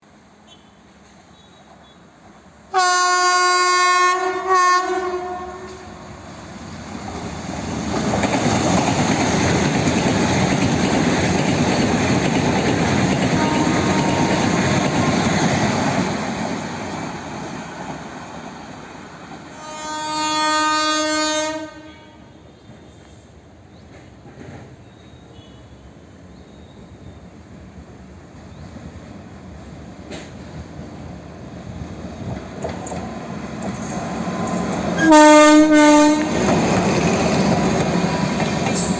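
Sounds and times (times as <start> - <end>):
train rumble and clickety-clack: 0.9 - 21.8, 22.4 - 38.9
locomotive horn: 2.7 - 6.0, 13.3 - 15.2, 19.5 - 22.5, 35.0 - 36.4.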